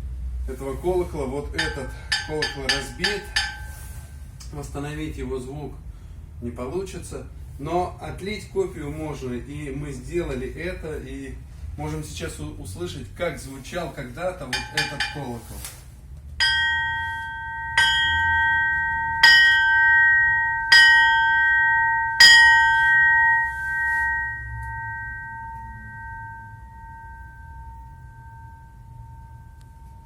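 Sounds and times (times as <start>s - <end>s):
church bell ringing: 16.4s - 30.0s.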